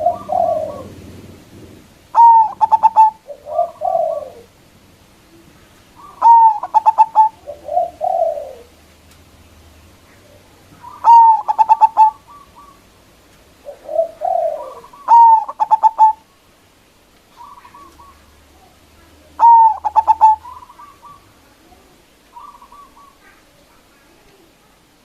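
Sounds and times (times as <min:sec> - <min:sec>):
faint bird trilling: 0:00.0 - 0:01.0, 0:02.1 - 0:04.5, 0:06.0 - 0:08.7, 0:10.8 - 0:12.9, 0:13.7 - 0:16.2, 0:17.3 - 0:18.4, 0:19.4 - 0:21.4, 0:22.3 - 0:23.5
dove cooing song: 0:00.0 - 0:08.9, 0:10.0 - 0:16.5, 0:17.3 - 0:23.7.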